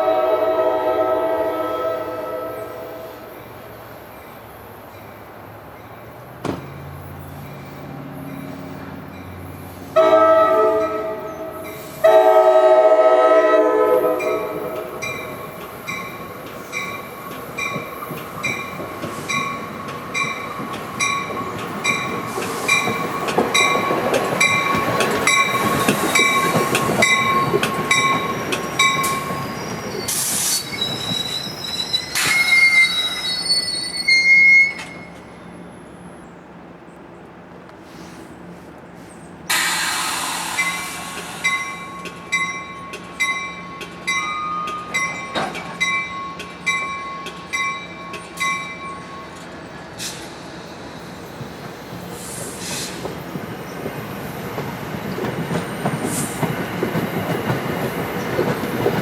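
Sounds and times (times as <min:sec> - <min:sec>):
train horn blasts: 0:00.0 - 0:03.3, 0:09.9 - 0:15.1
train wheels clacking over rail joints: 0:06.4 - 0:09.5, 0:14.2 - 0:31.3, 0:39.5 - 0:48.8, 0:51.4 - 0:59.0
high wheel squeal: 0:25.3 - 0:35.2, 0:39.1 - 0:42.1.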